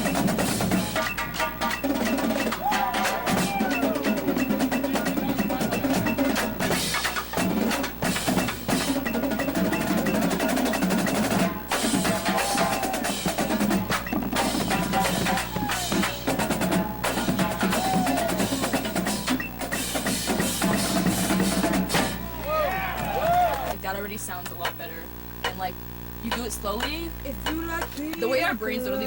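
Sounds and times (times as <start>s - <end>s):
snare and bass drum rolls: 0.0s - 22.2s.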